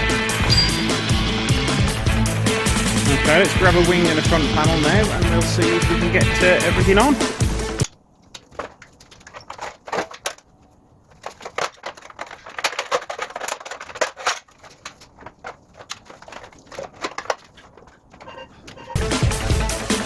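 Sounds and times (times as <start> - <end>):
car parts clicking and knocking: 7.8 - 19.0.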